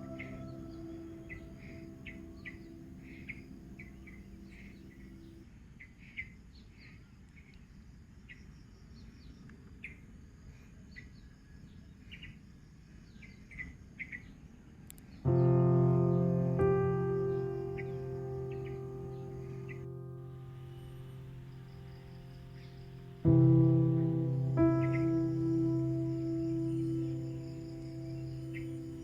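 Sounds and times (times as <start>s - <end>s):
held ambient music tone: 0.0s - 5.4s, 15.3s - 29.0s
small birds chirping: 0.0s - 10.1s, 10.9s - 29.0s.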